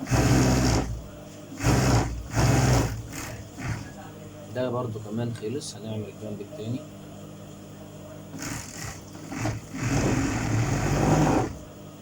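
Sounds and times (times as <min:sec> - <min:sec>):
overlock sewing machine stitching: 0:00.0 - 0:01.0, 0:01.6 - 0:04.0, 0:08.4 - 0:11.6.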